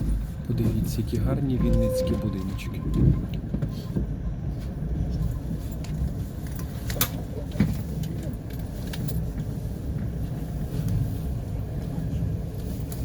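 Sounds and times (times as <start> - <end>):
vehicle ride rumble: 0.0 - 13.0.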